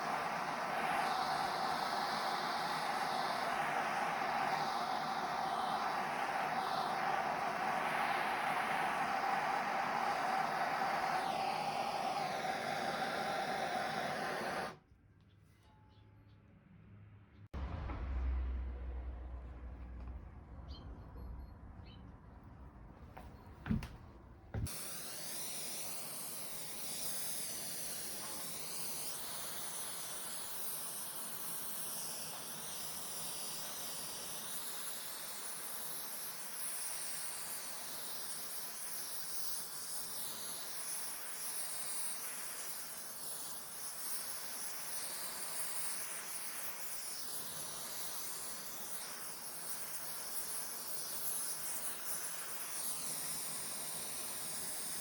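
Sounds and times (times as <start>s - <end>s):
air hissing from a tool: 0.0s - 14.8s, 24.6s - 55.0s.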